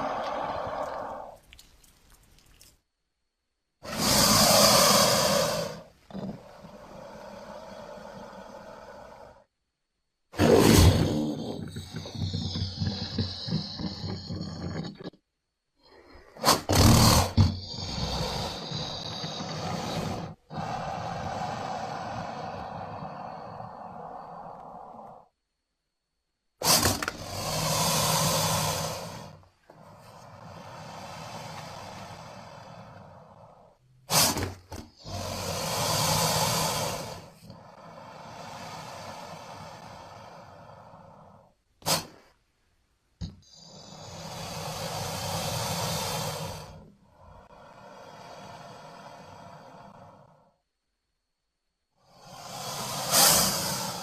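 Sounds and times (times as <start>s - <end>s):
creature breathy hiss: 0.0s - 1.4s, 3.8s - 9.5s, 10.4s - 15.1s, 15.9s - 25.3s, 26.6s - 42.4s, 43.5s - 50.6s, 52.0s - 54.0s
dinosaur roar: 0.0s - 1.4s, 10.4s - 15.2s
sharp burst of breath: 0.0s - 1.4s, 26.6s - 42.4s, 43.5s - 50.5s, 52.0s - 54.0s
quiet exhaling hiss: 0.0s - 2.9s, 3.8s - 9.5s, 15.8s - 25.3s, 26.6s - 42.6s, 43.2s - 50.6s, 51.9s - 54.0s.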